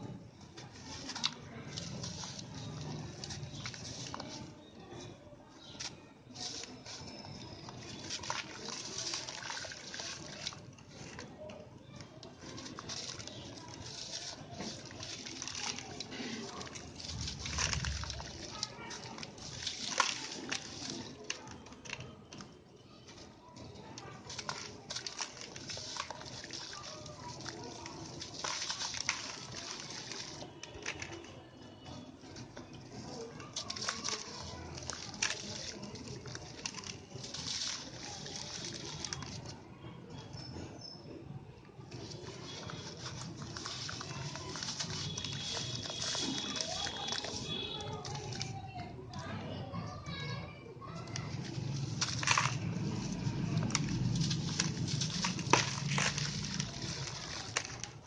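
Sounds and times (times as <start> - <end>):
concrete lumps crumbling and crunching: 0.0 - 39.6, 41.9 - 49.3, 51.0 - 58.0.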